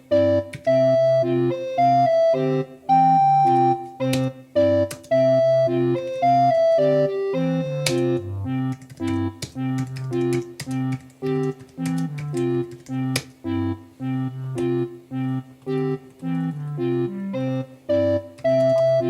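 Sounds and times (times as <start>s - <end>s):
organ-like keyboard melody: 0.0s - 19.0s
keypad key clicks: 7.8s - 13.4s.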